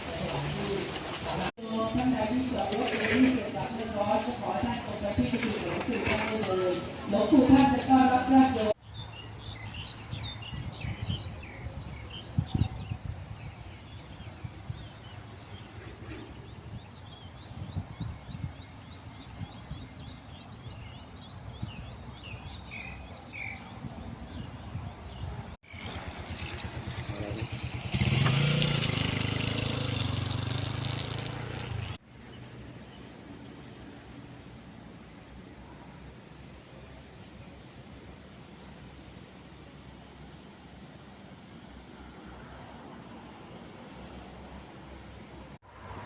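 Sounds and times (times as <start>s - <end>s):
birds chirping: 0.0s - 32.0s.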